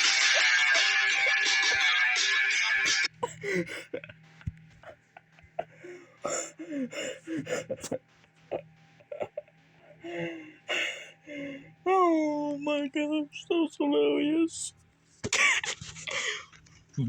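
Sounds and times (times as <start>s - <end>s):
person laughing hard: 3.1s - 11.0s, 15.2s - 16.5s.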